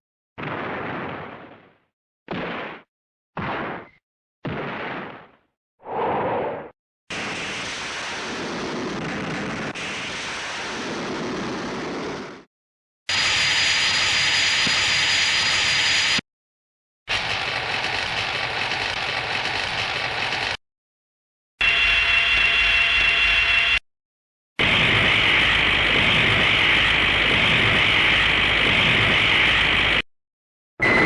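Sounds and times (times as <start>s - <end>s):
high whine: 24.6s - 30.0s, 30.8s - 31.0s.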